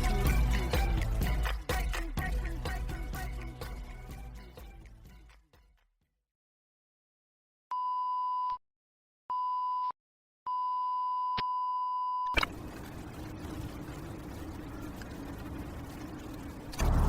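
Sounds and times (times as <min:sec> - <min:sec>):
noisy background with low hum: 0:12.3 - 0:17.0.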